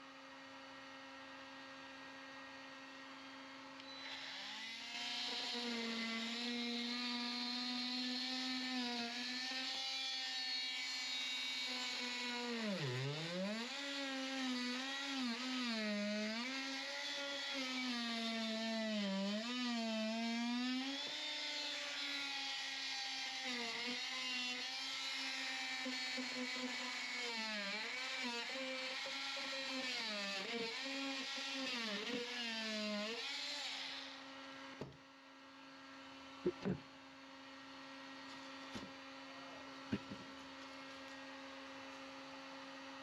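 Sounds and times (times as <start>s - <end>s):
power tool motor whining: 3.1s - 34.9s.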